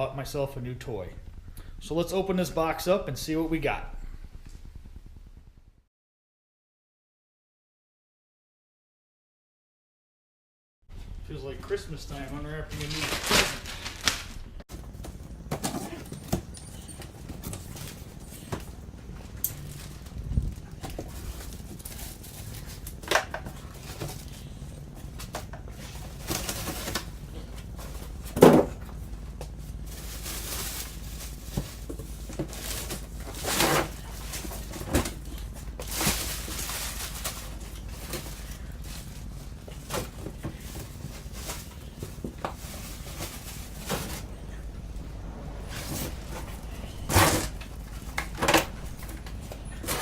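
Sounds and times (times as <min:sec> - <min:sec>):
cardboard rustling and scraping: 0:12.7 - 0:50.0.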